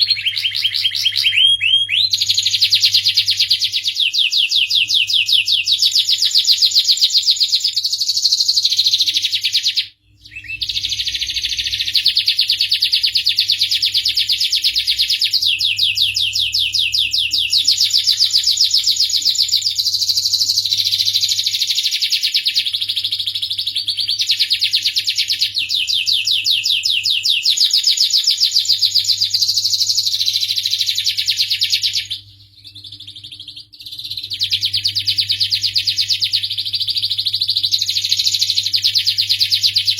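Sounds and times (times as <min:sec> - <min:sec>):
canary trilling song: 0:00.0 - 0:39.9.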